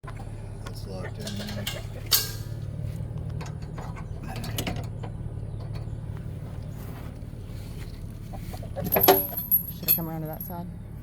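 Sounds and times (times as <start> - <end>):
sharp metallic clank: 1.3 - 2.6.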